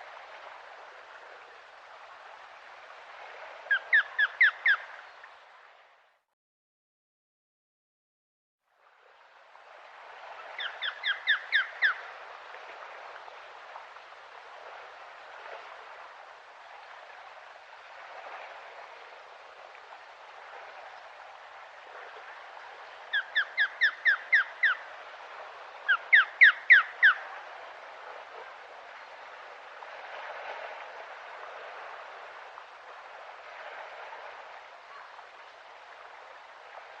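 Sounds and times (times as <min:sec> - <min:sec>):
steady outdoor hiss: 0:00.0 - 0:06.2, 0:08.7 - 0:37.0
osprey calling: 0:03.7 - 0:05.0, 0:10.6 - 0:12.1, 0:23.1 - 0:24.9, 0:25.8 - 0:27.3.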